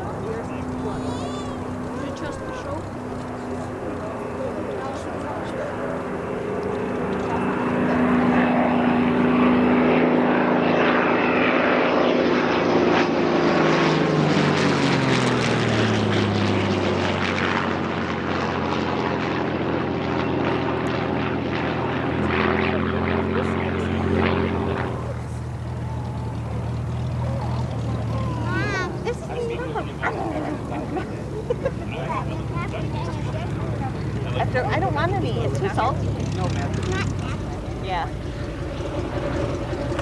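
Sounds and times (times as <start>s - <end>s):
propeller plane engine drone: 0.0s - 40.0s
second engine tone: 23.5s - 40.0s.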